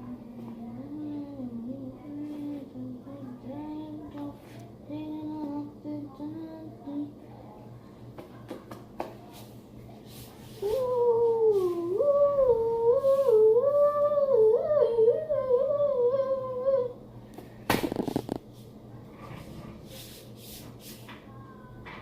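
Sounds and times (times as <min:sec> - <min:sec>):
high-pitched voice humming: 0:10.6 - 0:17.0.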